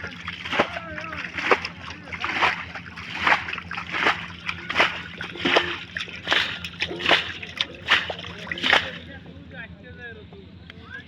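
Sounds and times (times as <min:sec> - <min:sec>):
pond water splashing: 0:00.0 - 0:09.2.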